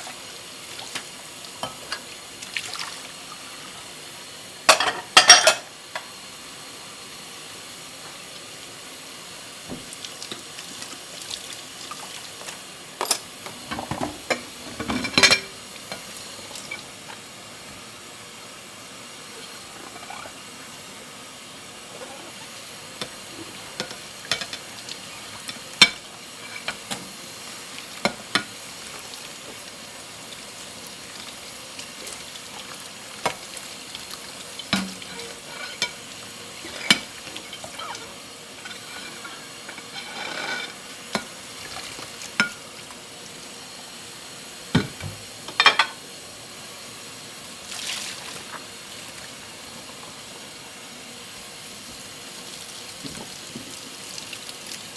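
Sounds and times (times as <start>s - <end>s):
crockery clinking: 4.7s - 5.6s, 13.0s - 15.6s.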